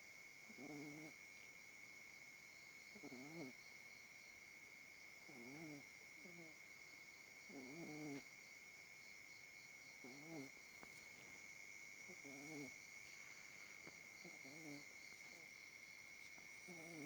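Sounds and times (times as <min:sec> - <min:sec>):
puppy snoring softly: 0:00.4 - 0:01.4, 0:02.8 - 0:03.8, 0:05.2 - 0:06.7, 0:07.4 - 0:08.4, 0:09.9 - 0:17.0.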